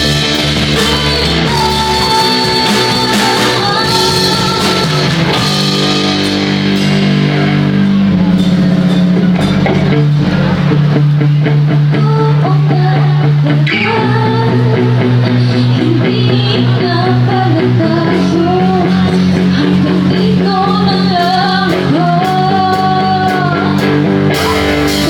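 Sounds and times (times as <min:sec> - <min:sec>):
woman singing: 0:00.0 - 0:06.0, 0:11.9 - 0:24.1
drum kit: 0:00.0 - 0:25.0
electric guitar: 0:00.0 - 0:25.0.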